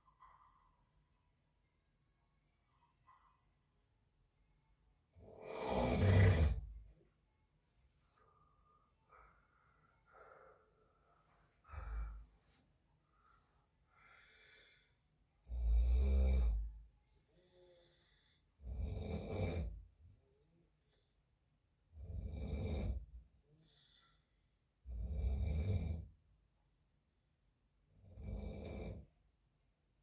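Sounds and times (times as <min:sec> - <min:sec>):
faint breaths: 0:00.0 - 0:04.4, 0:07.8 - 0:15.4, 0:16.5 - 0:18.7, 0:23.0 - 0:24.7
man snoring: 0:05.2 - 0:06.7, 0:15.4 - 0:16.7, 0:18.6 - 0:19.8, 0:22.0 - 0:23.1, 0:24.9 - 0:26.1, 0:28.0 - 0:29.1.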